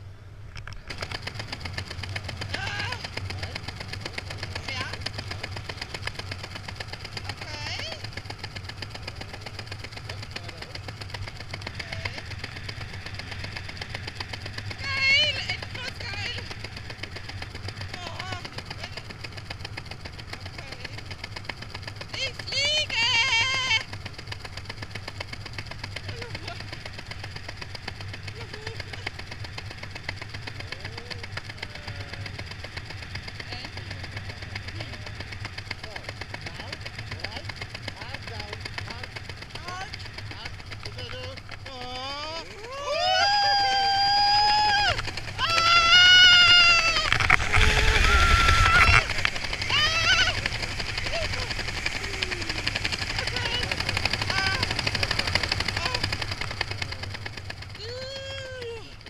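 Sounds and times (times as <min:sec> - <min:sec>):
engine idling: 0:00.0 - 0:59.0.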